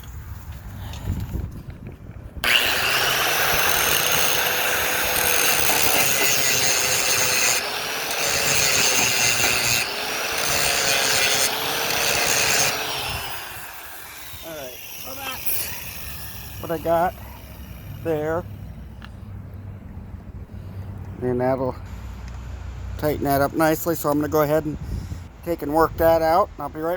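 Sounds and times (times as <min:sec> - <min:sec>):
angle grinder grinding metal: 0:02.4 - 0:18.8.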